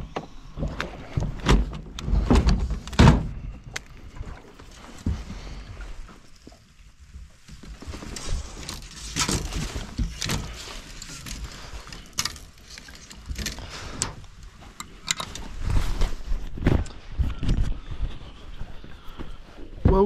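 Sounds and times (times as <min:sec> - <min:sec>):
handling clicks and rattles: 0:07.5 - 0:16.0.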